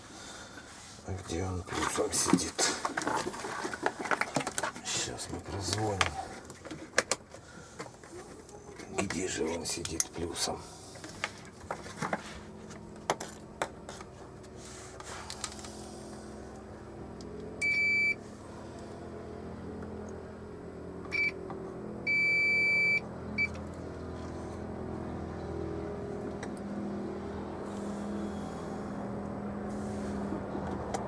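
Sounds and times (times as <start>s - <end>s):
multimeter continuity beeps: 17.6s - 18.2s, 22.1s - 23.6s.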